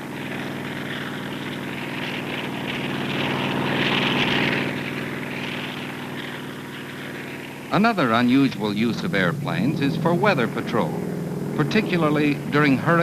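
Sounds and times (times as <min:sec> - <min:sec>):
aircraft engine droning: 0:00.0 - 0:13.0.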